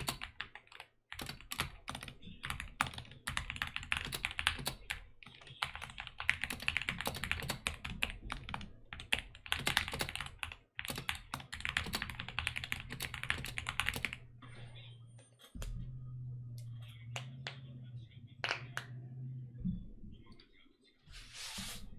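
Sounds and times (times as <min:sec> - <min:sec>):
fast keyboard typing: 0:00.0 - 0:14.3
low steady hum: 0:14.2 - 0:21.3.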